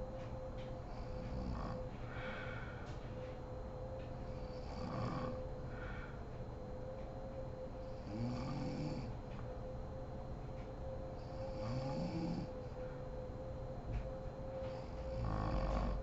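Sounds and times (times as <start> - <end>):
steady low hum: 0.0 - 16.0
woman snoring: 1.0 - 2.5, 4.4 - 6.0, 8.0 - 9.1, 11.3 - 12.5, 14.6 - 16.0.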